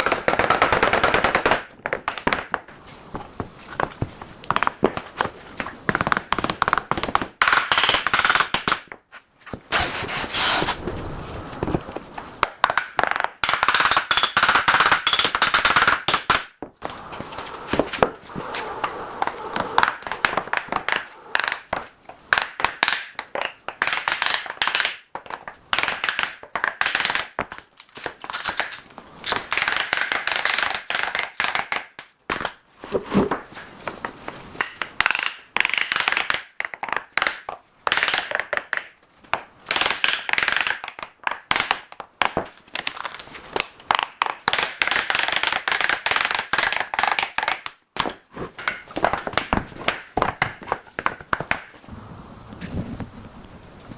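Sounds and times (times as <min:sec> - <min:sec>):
wooden pieces knocking and scraping: 0:01.7 - 0:30.6, 0:45.8 - 0:51.9.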